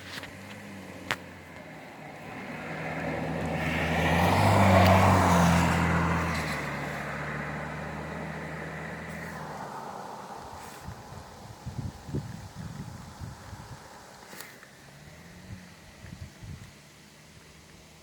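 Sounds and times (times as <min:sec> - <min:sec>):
motor vehicle driving past: 0:00.0 - 0:12.2.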